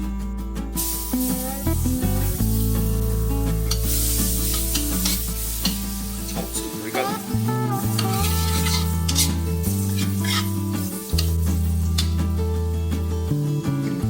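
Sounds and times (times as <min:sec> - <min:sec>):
background music with bass line: 0:00.0 - 0:14.0
ginger sizzling in hot oil: 0:00.8 - 0:12.3
spatula scraping wok: 0:02.5 - 0:07.3, 0:07.9 - 0:12.2.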